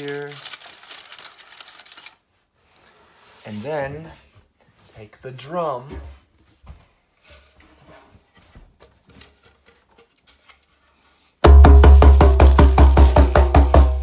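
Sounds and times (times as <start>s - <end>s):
djembe drum strokes: 11.4s - 14.0s.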